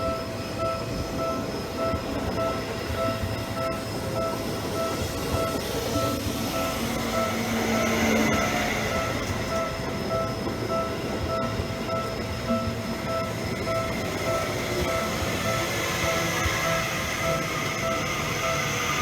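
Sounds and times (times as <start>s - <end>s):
level-crossing warning bell: 0.0s - 19.0s
low steady tone: 0.0s - 19.0s
train wheels rumbling on track: 0.0s - 19.0s.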